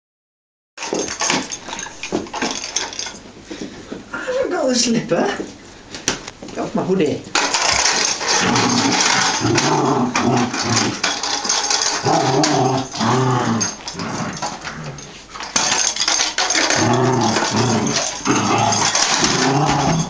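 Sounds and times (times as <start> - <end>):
puppy growling playfully: 7.6 - 15.8, 16.4 - 20.0.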